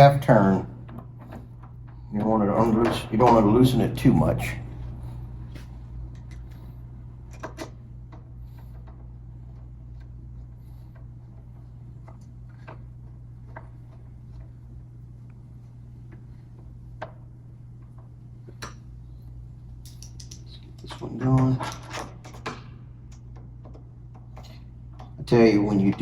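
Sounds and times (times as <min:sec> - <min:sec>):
steady low hum: 0:00.0 - 0:26.0
screwdriver clicks and taps: 0:19.8 - 0:20.5.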